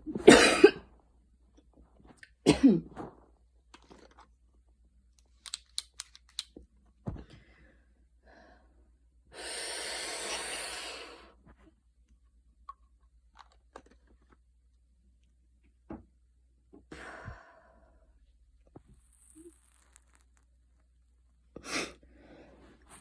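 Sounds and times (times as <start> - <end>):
small clicks: 5.2 - 6.6
woman breathy exhale: 16.9 - 18.0.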